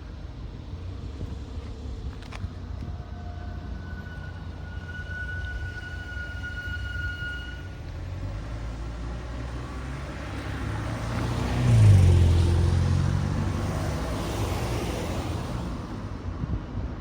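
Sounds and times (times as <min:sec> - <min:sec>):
engine and tyre noise: 0:00.0 - 0:17.0
vehicle passing by: 0:08.1 - 0:16.1.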